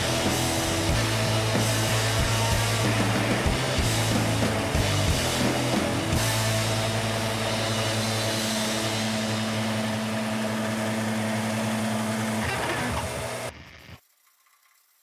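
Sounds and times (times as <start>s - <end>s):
background music: 0.0s - 10.7s
machine hum: 0.0s - 14.0s.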